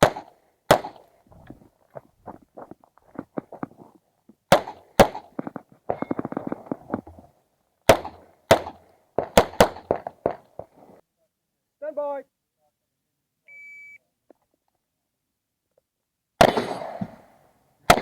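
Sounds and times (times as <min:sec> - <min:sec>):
pistol shots: 0:00.0 - 0:01.1, 0:04.5 - 0:05.3, 0:07.9 - 0:10.4, 0:16.4 - 0:17.2.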